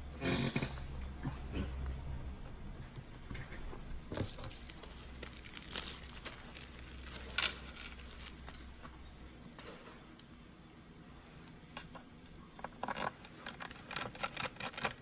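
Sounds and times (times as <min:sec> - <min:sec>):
hands rustling: 0:00.3 - 0:09.0.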